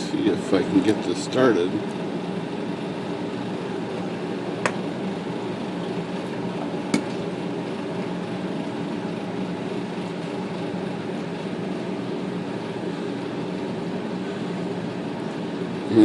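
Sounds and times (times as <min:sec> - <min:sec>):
steady hum: 0:00.0 - 0:16.0.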